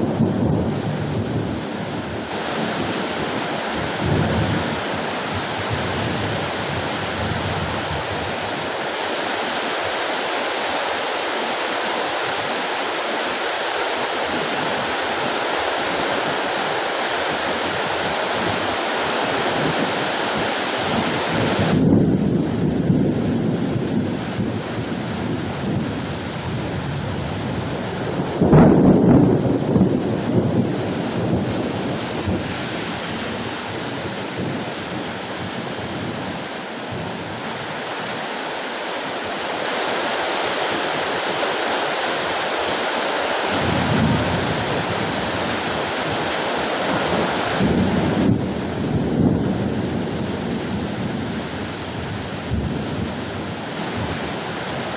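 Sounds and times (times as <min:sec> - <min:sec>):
thunder rumbling: 0:00.0 - 0:08.6, 0:21.5 - 0:36.2, 0:43.5 - 0:54.4
heavy rain pouring: 0:00.0 - 0:54.9
sharp thunderclap: 0:02.3 - 0:07.5, 0:26.7 - 0:33.0, 0:43.5 - 0:45.6.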